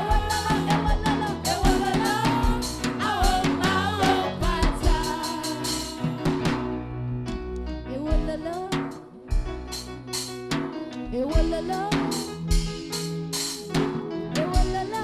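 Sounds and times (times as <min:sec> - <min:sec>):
sliding melody line: 0:00.0 - 0:06.8
bass: 0:00.0 - 0:15.0
drum kit beating: 0:00.0 - 0:15.0.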